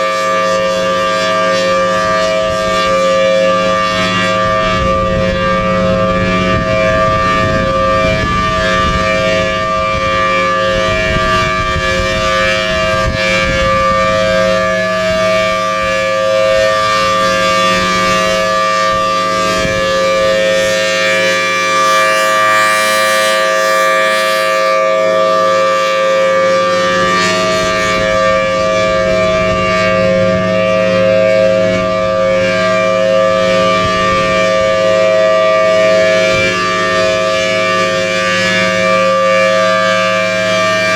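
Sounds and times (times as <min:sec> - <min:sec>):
warning siren steady tone: 0:00.0 - 0:40.9.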